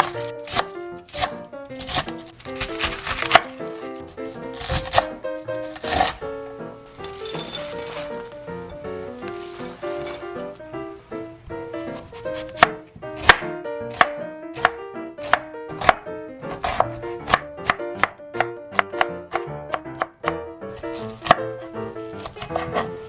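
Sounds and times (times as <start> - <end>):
knife chopping cabbage on board: 0.0 - 6.3, 11.8 - 23.0
light background music: 0.0 - 23.0.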